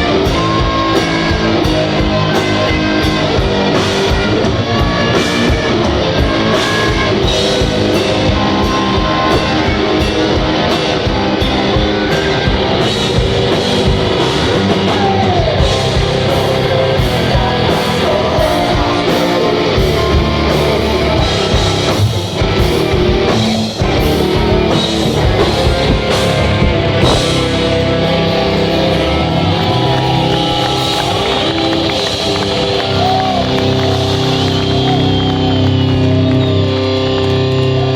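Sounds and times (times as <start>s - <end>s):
bass: 0.0s - 37.9s
distorted electric guitar: 0.0s - 37.9s
drum kit: 0.0s - 37.9s
person singing: 13.4s - 26.3s.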